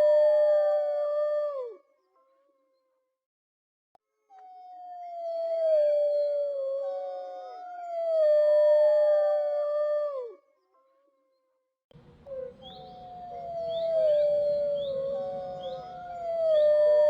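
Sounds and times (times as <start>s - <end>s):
wolves howling: 12.0s - 17.0s.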